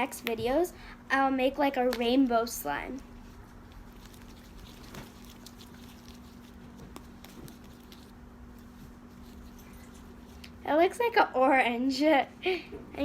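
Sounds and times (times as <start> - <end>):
steady low hum: 0.0 - 13.0
slime being kneaded: 3.4 - 10.6.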